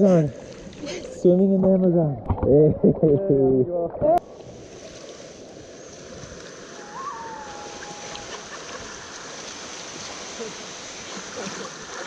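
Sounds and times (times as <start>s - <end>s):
water sloshing and splashing: 4.0s - 12.0s.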